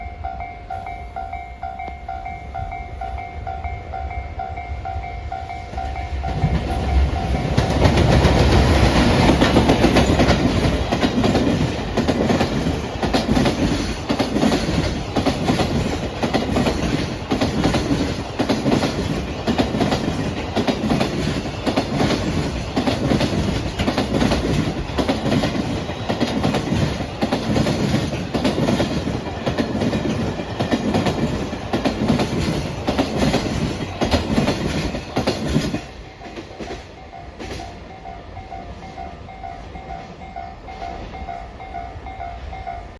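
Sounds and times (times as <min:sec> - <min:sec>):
electric locomotive arriving: 0:00.0 - 0:42.9
train wheels clacking over rail joints: 0:05.8 - 0:37.8.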